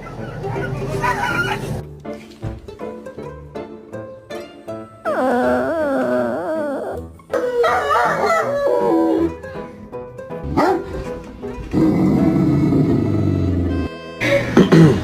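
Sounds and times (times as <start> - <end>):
background music: 0.0 - 15.0
dog howling: 5.1 - 9.6.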